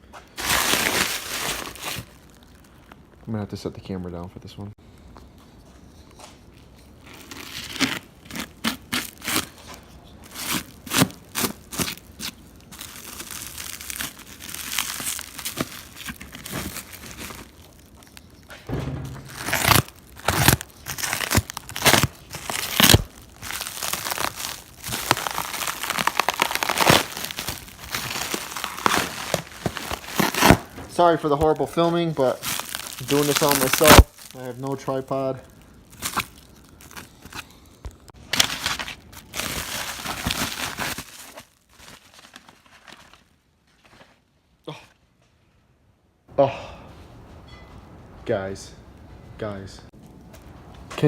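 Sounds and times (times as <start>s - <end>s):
packing material crumpling and tearing: 0.2s - 3.2s, 6.9s - 18.5s, 19.2s - 44.2s.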